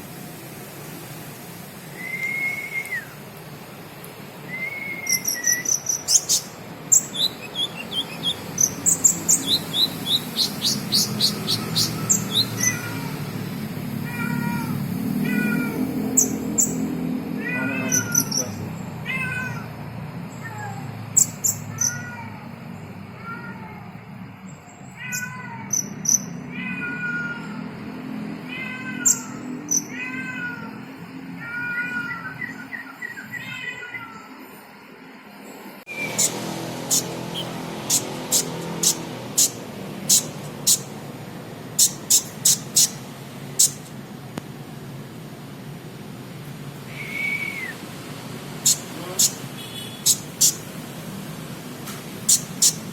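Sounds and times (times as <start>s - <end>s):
bird chirps and trills: 4.4s - 13.3s, 14.3s - 17.1s, 17.8s - 19.6s, 21.1s - 22.1s, 29.0s - 30.1s, 35.9s - 41.1s, 41.7s - 44.0s, 48.6s - 50.8s, 52.2s - 52.9s
falling mew-like bird calls: 4.5s - 13.3s, 14.0s - 22.6s, 28.7s - 34.5s.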